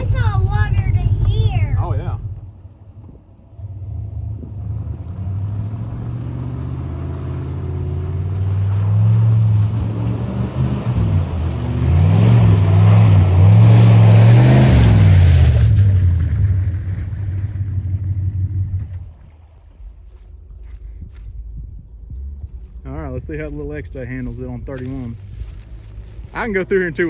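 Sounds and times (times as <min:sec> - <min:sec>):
car engine revving: 0:00.0 - 0:19.3
water and mud splashing: 0:04.5 - 0:27.0.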